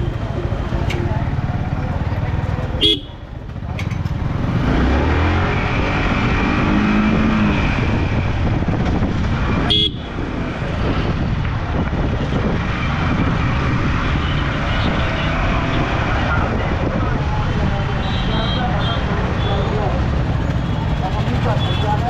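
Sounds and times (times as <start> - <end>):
motorcycle engine and road rumble: 0.0 - 22.0
car horns: 2.8 - 3.2, 9.6 - 10.2, 17.9 - 19.7.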